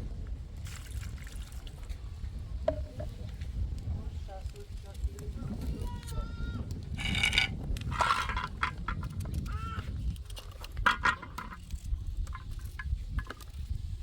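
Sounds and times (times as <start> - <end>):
scattered clicks and knocks: 10.2 - 13.6.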